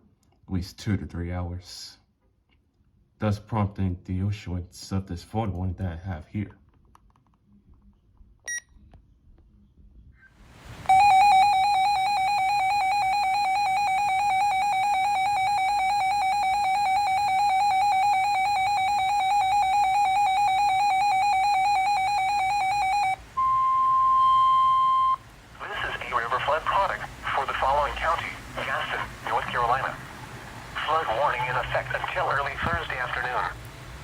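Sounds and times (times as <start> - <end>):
rapidly pulsing alarm tone: 10.9 - 25.2
steady warning tone: 10.9 - 30.0.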